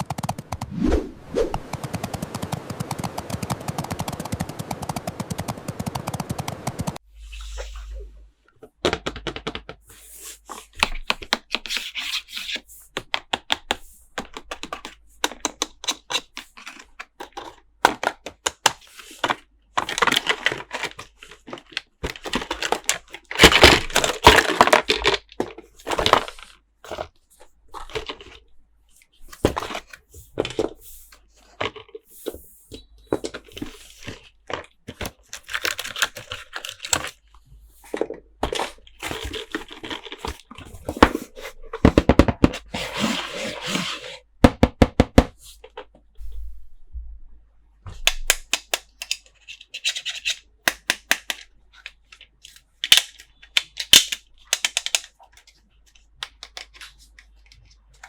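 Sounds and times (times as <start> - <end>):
wrappers crinkling and tearing: 19.1 - 27.1, 33.6 - 37.3
sharp plastic clicks: 48.0 - 58.0.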